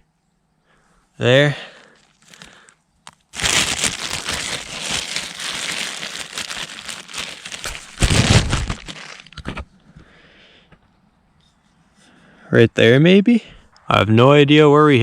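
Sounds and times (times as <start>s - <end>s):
plastic bag crinkling: 2.0s - 9.6s.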